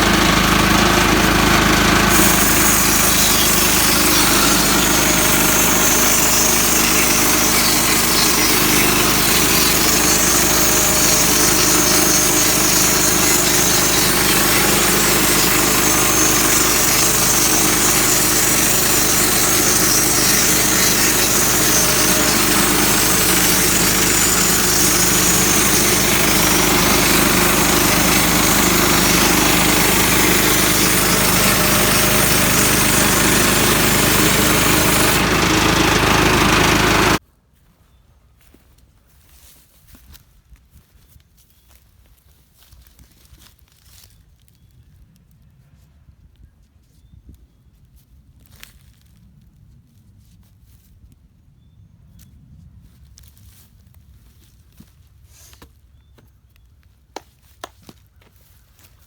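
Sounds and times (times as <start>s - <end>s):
saw blade cutting log: 0.0s - 37.2s
sawmill engine running: 0.0s - 37.2s.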